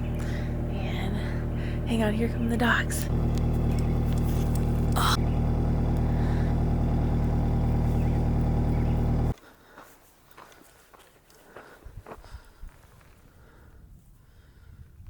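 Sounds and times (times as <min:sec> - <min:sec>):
car engine idling: 0:00.0 - 0:09.4.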